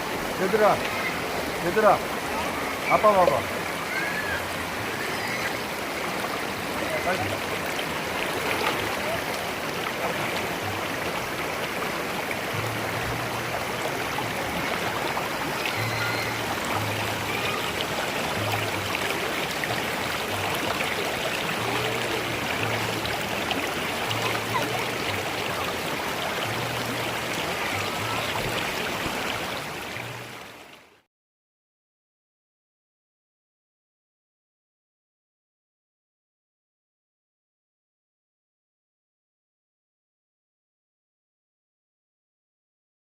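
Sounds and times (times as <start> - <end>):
stream rushing over rocks: 0.0 - 31.0
low steady notes: 5.8 - 30.4.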